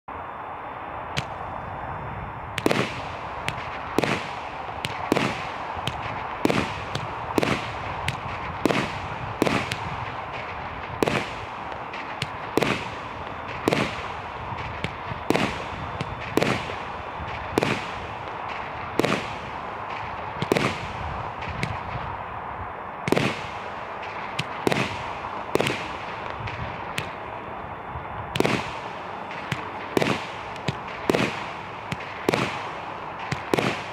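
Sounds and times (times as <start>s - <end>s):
firework hiss: 0.9s - 27.4s
firework bangs: 2.5s - 22.2s, 23.0s - 27.4s, 28.2s - 33.9s.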